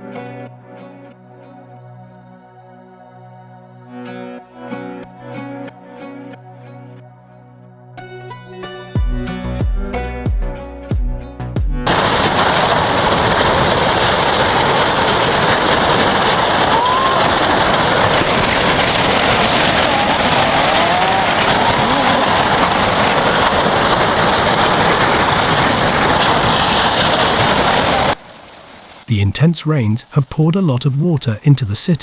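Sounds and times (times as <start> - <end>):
torrential rain: 11.8 - 30.8
wind: 11.9 - 32.0.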